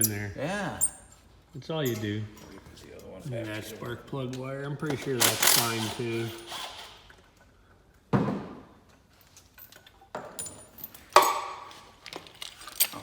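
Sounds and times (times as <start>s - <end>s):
metal tools clinking: 1.8s - 4.0s, 4.9s - 6.9s, 9.0s - 13.0s.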